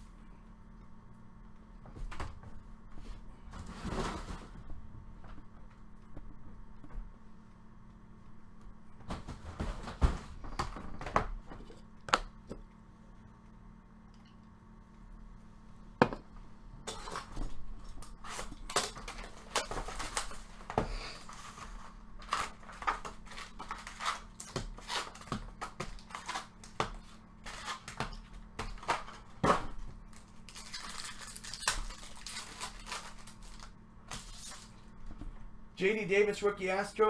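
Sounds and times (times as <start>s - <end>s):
cards and wrappers crinkling: 19.0s - 28.0s, 30.0s - 34.8s.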